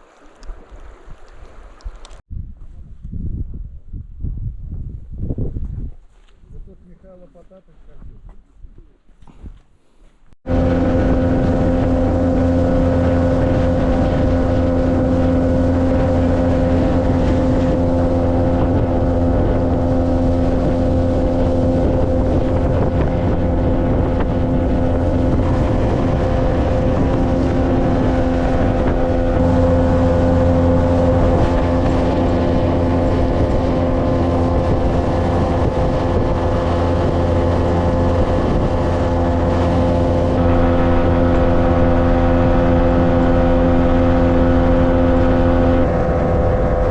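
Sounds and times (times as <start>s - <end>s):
wind noise on microphone: 0.0s - 7.2s, 7.8s - 46.9s
boat motor running: 10.4s - 46.9s.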